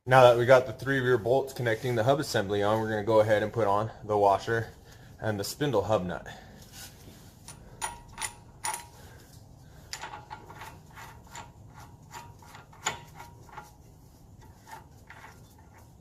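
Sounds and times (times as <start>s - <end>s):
metallic clicks and clinks: 7.4s - 11.6s.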